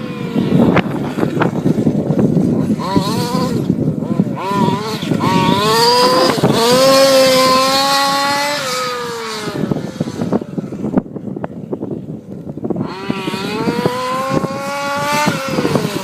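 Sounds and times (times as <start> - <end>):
engine revving: 2.4 - 11.0, 12.8 - 16.0.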